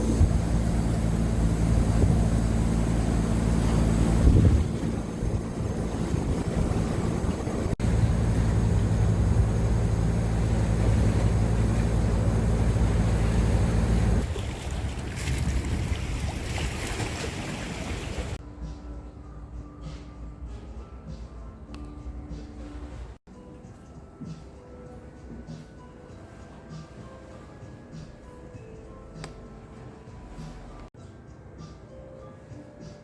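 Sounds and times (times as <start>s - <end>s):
boat engine droning: 0.0s - 18.4s
water noise: 0.0s - 18.4s
wind: 0.0s - 18.4s.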